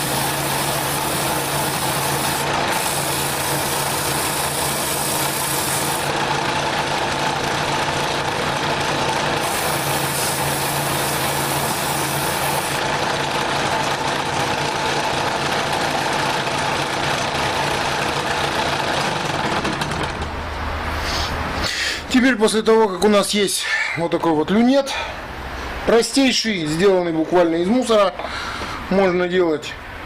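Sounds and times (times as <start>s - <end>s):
wood lathe motor hum: 0.0s - 20.3s.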